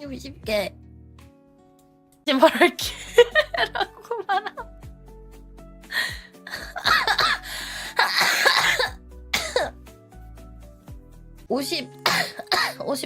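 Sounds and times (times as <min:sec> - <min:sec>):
background music: 0:00.0 - 0:13.0
woman coughing hard: 0:06.6 - 0:07.4, 0:08.0 - 0:09.8, 0:12.0 - 0:12.9.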